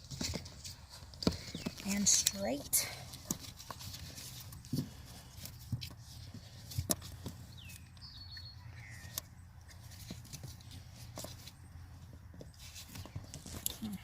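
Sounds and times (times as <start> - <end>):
bird chirping: 7.4 - 9.5.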